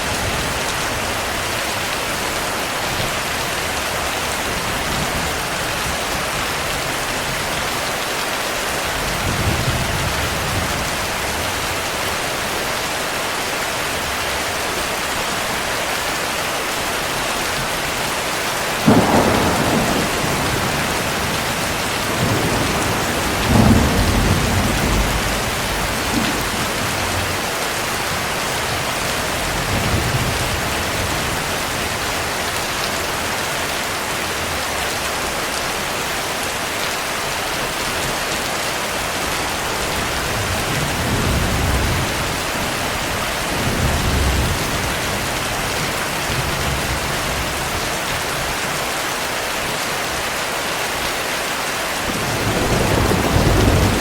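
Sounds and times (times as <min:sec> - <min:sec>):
heavy rain: 0:00.0 - 0:54.0
thunder rumbling: 0:18.8 - 0:32.2, 0:52.1 - 0:54.0.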